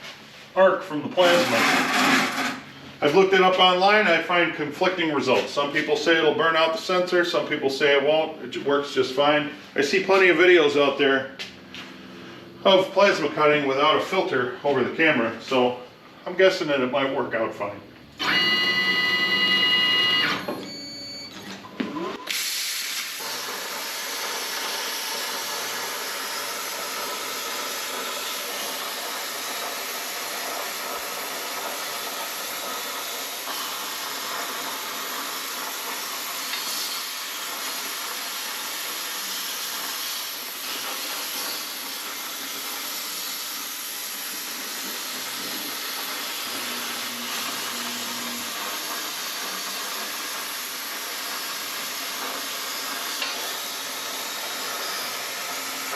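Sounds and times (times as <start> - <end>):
loud pitched tone: 18.2 - 21.2
plasma cutter hissing: 22.3 - 55.9.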